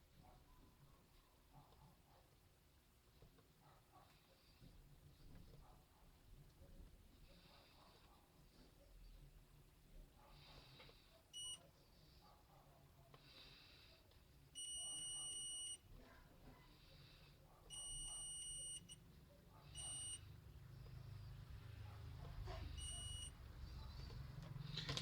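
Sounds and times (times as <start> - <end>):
multimeter beeps: 11.4 - 11.7, 14.6 - 15.8, 17.7 - 19.0, 19.8 - 20.3, 22.8 - 23.4.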